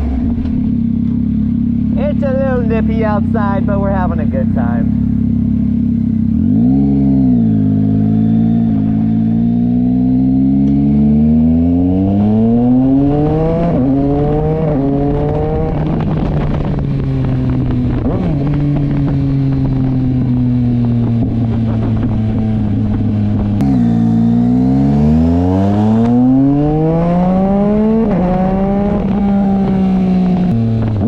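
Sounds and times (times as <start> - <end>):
motorcycle engine accelerating: 0.0 - 31.0.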